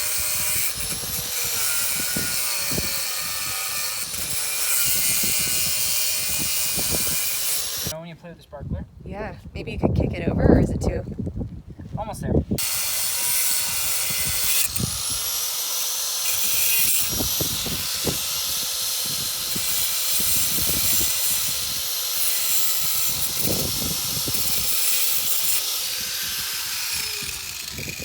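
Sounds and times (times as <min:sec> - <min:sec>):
angle grinder cutting steel: 0:00.0 - 0:08.0, 0:12.6 - 0:28.0.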